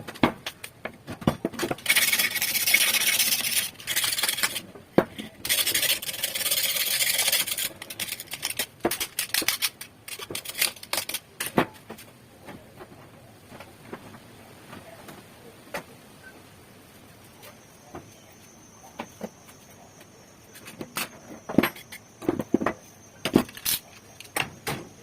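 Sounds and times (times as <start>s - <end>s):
metal parts clicking and knocking: 1.2s - 11.6s, 20.6s - 24.8s
abrasive rubbing on rusty metal: 1.7s - 4.6s.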